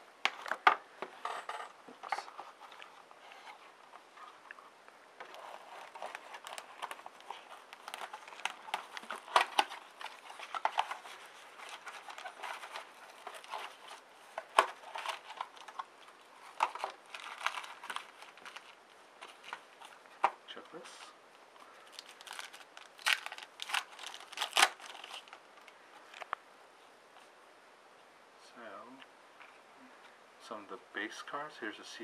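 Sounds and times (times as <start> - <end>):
card wrappers tearing and crinkling: 5.2 - 20.0, 21.8 - 25.4.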